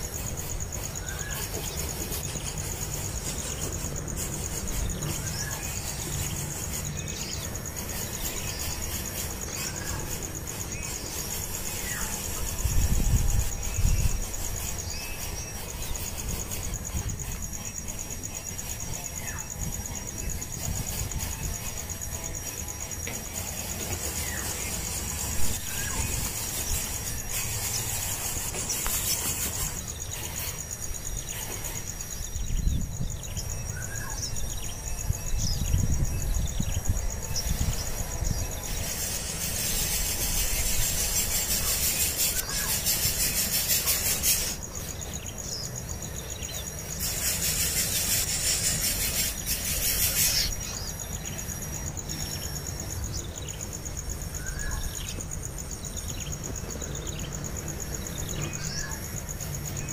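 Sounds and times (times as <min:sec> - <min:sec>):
insect trill: 0:00.0 - 0:59.9
loud high insect buzzing: 0:00.0 - 0:59.9.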